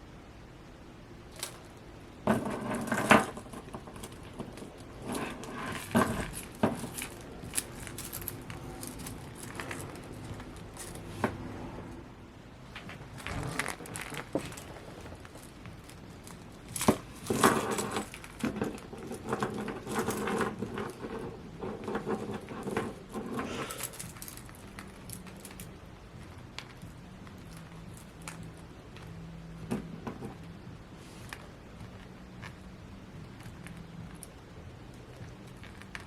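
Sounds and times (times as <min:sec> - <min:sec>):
packaging rustling: 0:02.6 - 0:11.3, 0:12.8 - 0:28.6.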